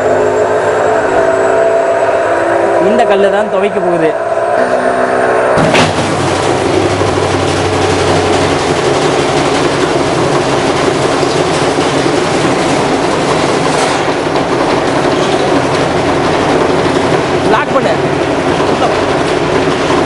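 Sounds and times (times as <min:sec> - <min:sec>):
brick rattling in washing machine drum: 0:05.6 - 0:20.0.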